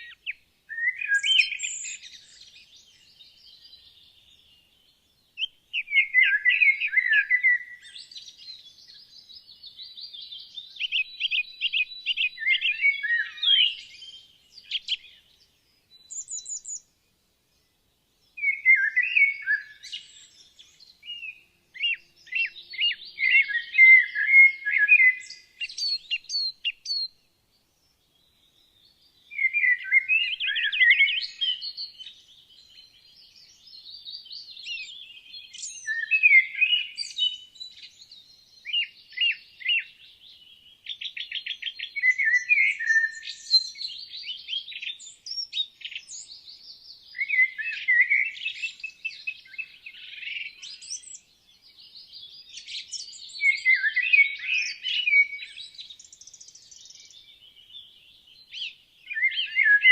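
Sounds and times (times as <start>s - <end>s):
songbirds singing: 0.0s - 59.9s.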